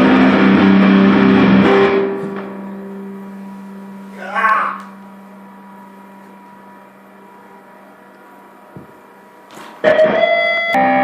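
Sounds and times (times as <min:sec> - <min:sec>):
loud ringing chord: 0:00.0 - 0:11.0
low hum: 0:00.0 - 0:11.0.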